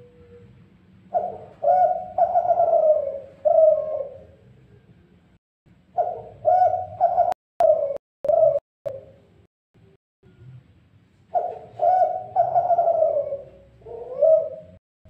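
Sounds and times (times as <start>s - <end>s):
dove cooing: 0.0s - 4.6s, 6.0s - 9.2s, 11.3s - 14.8s.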